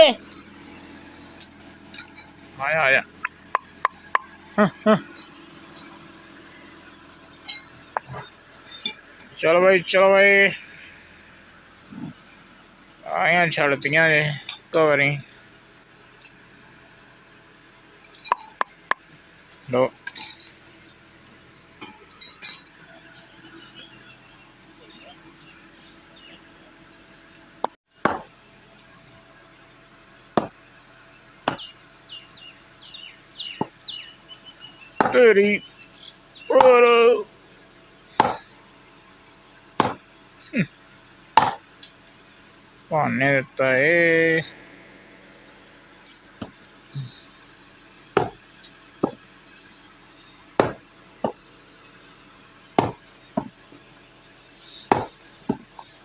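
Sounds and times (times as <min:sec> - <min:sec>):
bird chirps: 0:03.1 - 0:11.3, 0:19.9 - 0:27.3, 0:31.0 - 0:40.7, 0:44.4 - 0:52.4, 0:53.0 - 0:56.0
sharp knocks: 0:31.5 - 0:31.7, 0:38.2 - 0:38.5, 0:39.8 - 0:40.0, 0:41.4 - 0:41.6, 0:48.2 - 0:48.4, 0:50.6 - 0:51.4, 0:52.8 - 0:53.6, 0:54.9 - 0:55.6.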